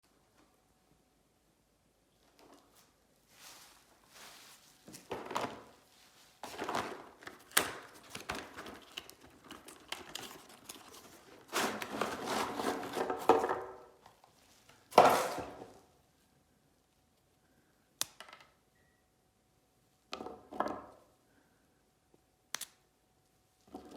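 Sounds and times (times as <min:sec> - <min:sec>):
crinkling and rustling: 0:02.2 - 0:15.9.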